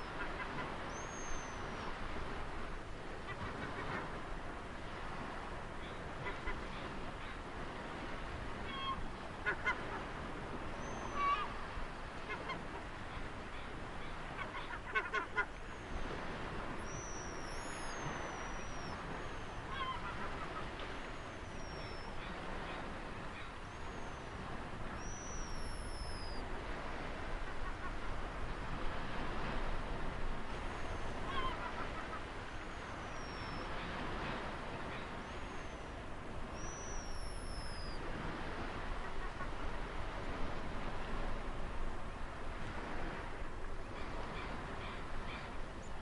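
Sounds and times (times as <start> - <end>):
ocean waves: 0.0 - 46.0
birds calling: 16.8 - 26.4, 30.6 - 38.0.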